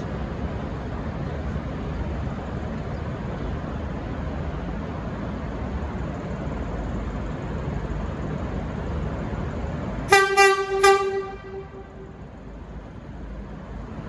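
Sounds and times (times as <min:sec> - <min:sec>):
diesel train rumbling: 0:00.0 - 0:14.0
low train horn toots: 0:10.1 - 0:12.3.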